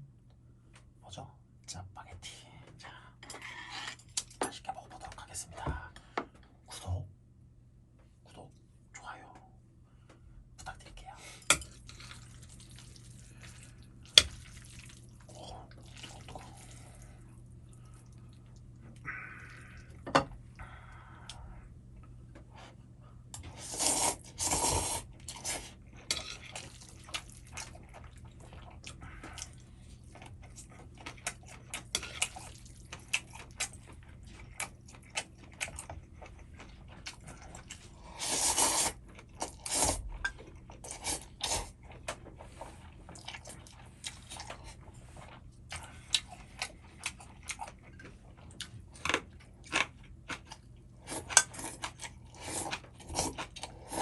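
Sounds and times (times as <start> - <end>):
steady low hum: 0.0 - 54.0
chewing: 11.6 - 20.0, 24.9 - 54.0
noodle slurps: 23.6 - 25.7, 38.1 - 40.0.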